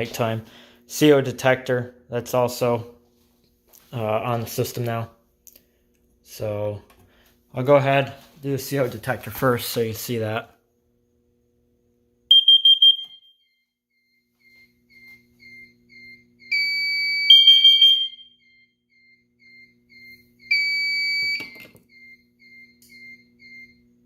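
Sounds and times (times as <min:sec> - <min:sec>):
quick high alarm beeps: 0:12.3 - 0:13.5, 0:14.5 - 0:23.8
lower steady alarm tone: 0:12.3 - 0:24.0.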